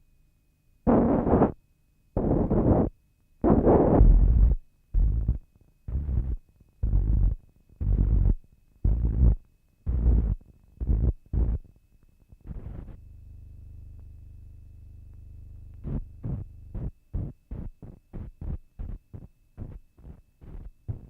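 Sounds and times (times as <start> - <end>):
noise bursts with low thud: 2.2 - 11.6.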